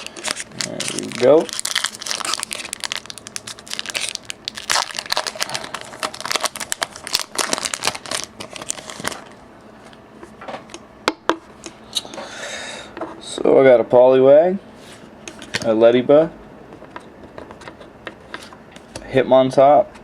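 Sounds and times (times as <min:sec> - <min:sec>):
foil wrapper crinkling: 0:00.0 - 0:09.4.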